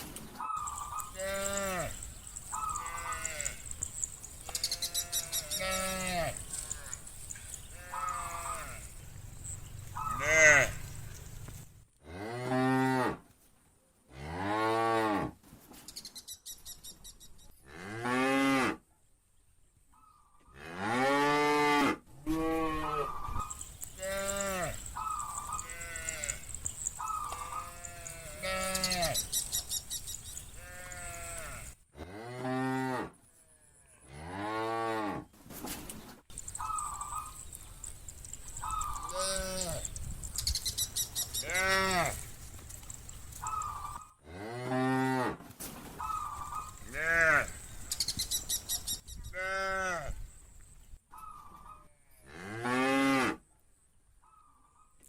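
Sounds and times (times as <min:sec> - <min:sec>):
cows mooing: 0:00.6 - 0:11.0, 0:20.6 - 0:29.5, 0:30.6 - 0:33.1, 0:38.2 - 0:39.9, 0:41.4 - 0:42.8, 0:46.6 - 0:47.6.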